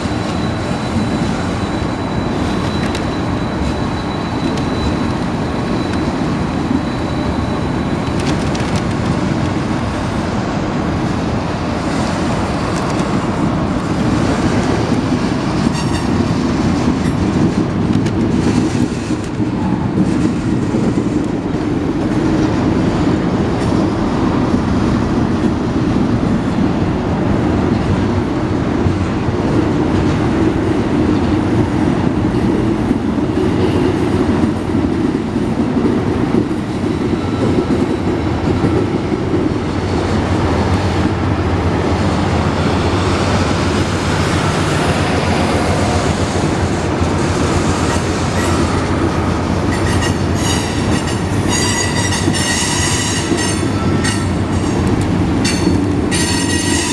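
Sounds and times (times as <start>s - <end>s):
wheel flanges squealing: 0.0s - 8.4s
freight train cars rumbling: 0.0s - 56.9s.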